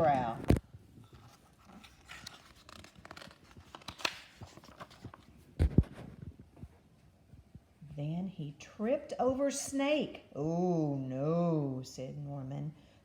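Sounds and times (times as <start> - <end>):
book page rustling: 0.3 - 6.7.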